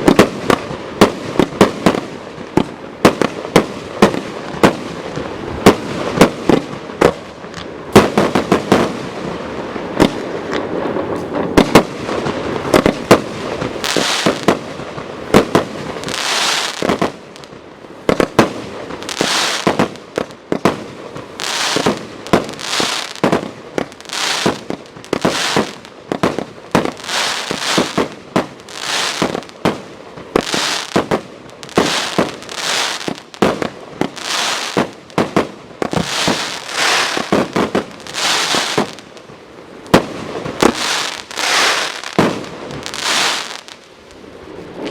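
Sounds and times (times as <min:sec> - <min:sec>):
firework bangs: 0:00.0 - 0:44.2
hissing firework bursts: 0:00.0 - 0:44.9
firework battery firing: 0:18.1 - 0:39.3, 0:39.9 - 0:44.0.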